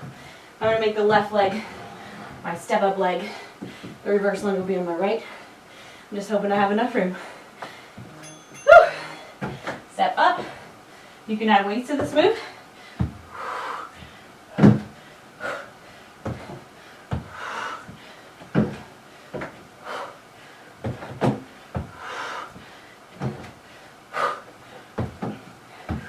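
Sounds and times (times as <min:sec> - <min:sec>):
hard exhaled breaths: 0:01.3 - 0:04.0, 0:12.4 - 0:26.0
feet thudding on box and floor: 0:13.0 - 0:13.2, 0:16.2 - 0:19.6, 0:20.8 - 0:22.0, 0:25.0 - 0:26.0.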